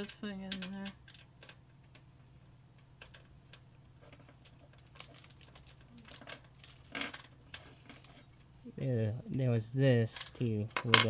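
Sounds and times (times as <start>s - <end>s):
small metal parts clicking: 0.0s - 2.1s, 2.8s - 8.5s, 10.1s - 11.0s
low steady hum: 0.0s - 11.0s.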